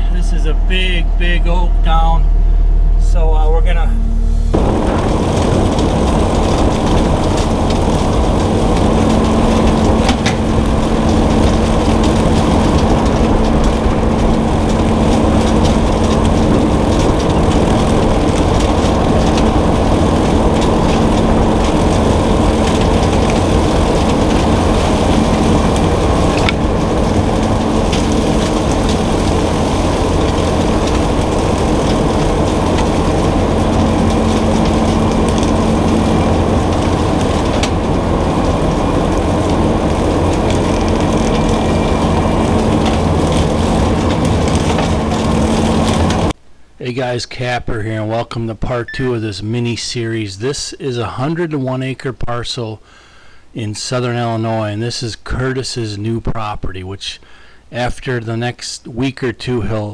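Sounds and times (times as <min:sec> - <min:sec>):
diesel engine running: 0:00.0 - 0:46.4.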